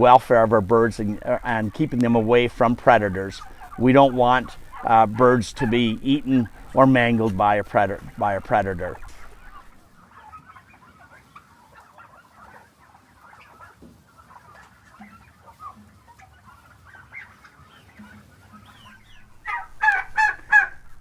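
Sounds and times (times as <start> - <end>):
turkey gobbling: 0.0 - 21.0
turkeys clucking and chirping: 0.0 - 21.0.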